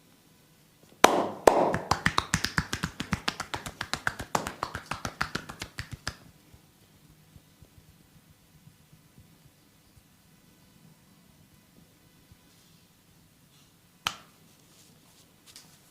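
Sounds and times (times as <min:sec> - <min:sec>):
rapid hand slaps on body: 0:01.0 - 0:06.3, 0:14.0 - 0:14.3.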